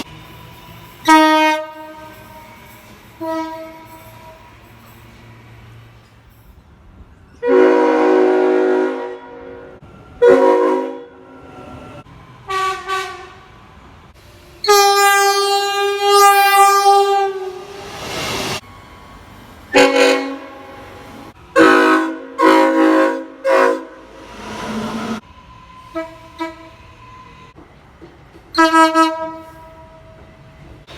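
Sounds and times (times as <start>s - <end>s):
locomotive air horn blasts: 1.1s - 2.6s, 3.2s - 4.4s, 7.4s - 11.3s, 12.5s - 13.5s, 14.6s - 17.6s, 19.7s - 24.1s, 25.9s - 26.8s, 28.6s - 30.2s.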